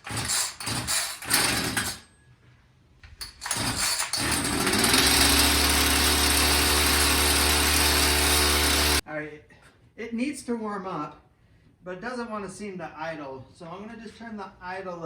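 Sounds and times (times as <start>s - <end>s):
chainsaw pull-start cranking: 0.0s - 2.0s, 3.2s - 9.0s
chainsaw engine running: 3.7s - 9.0s.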